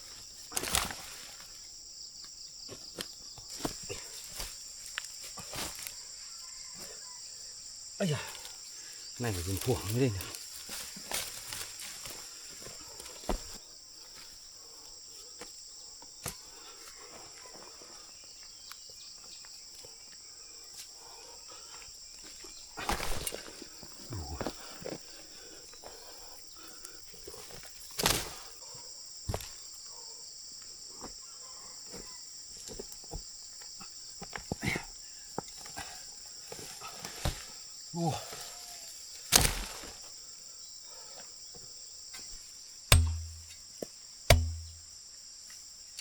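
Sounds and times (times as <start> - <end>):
insects droning: 0.0 - 46.0
thuds and rustling of digging plants: 0.5 - 1.6, 2.7 - 6.0, 9.3 - 13.6, 22.8 - 23.6, 27.9 - 28.5, 36.5 - 37.6, 39.2 - 40.1, 42.2 - 43.7, 44.3 - 44.9.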